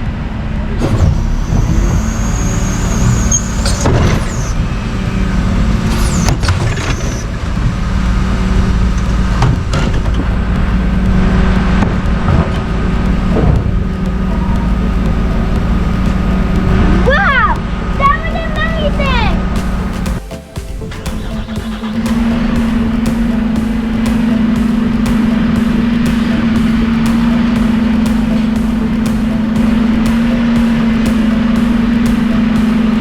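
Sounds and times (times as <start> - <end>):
heavy truck engine running: 0.0 - 33.0
high squeal: 0.7 - 9.4
clanks and squeaks: 0.7 - 17.9.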